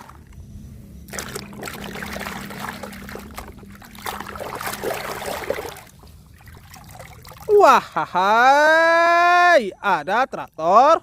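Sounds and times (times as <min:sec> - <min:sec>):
steady low hum: 0:00.0 - 0:11.0
water pouring and splashing: 0:01.1 - 0:07.6.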